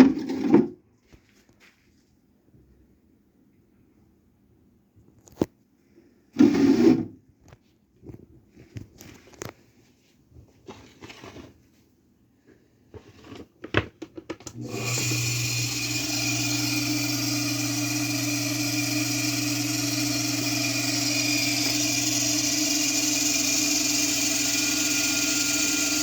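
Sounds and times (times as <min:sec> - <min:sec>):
pump motor humming and whirring: 0:14.5 - 0:26.0.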